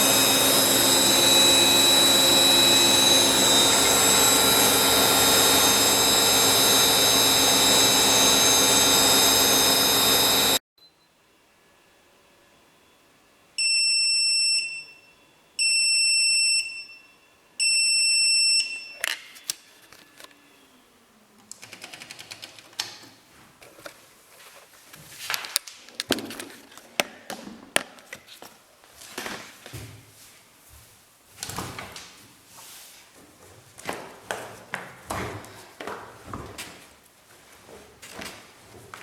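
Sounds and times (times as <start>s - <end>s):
washing machine beeping: 0.0s - 11.0s, 13.6s - 19.0s.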